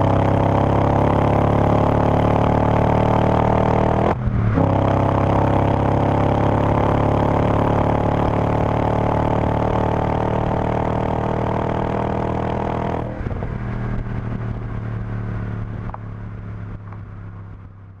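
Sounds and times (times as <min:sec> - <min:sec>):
car engine running under load: 0:08.7 - 0:18.0.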